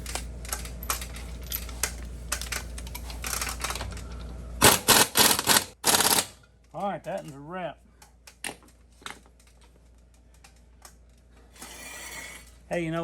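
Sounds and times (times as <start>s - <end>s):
impact wrench hammering: 4.6s - 6.4s.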